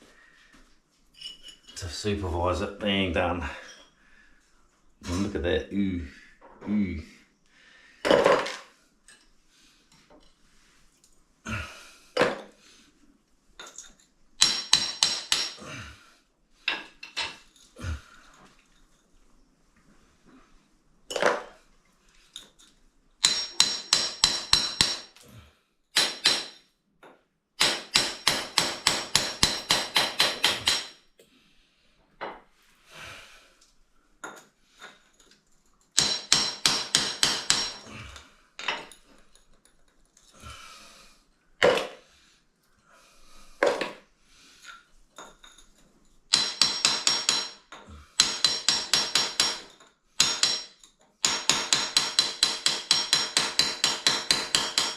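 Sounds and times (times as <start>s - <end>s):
hammer striking cement: 14.4s - 15.6s, 23.2s - 25.1s, 26.0s - 26.6s, 27.6s - 30.9s, 36.0s - 37.9s, 46.3s - 47.6s, 48.2s - 54.9s.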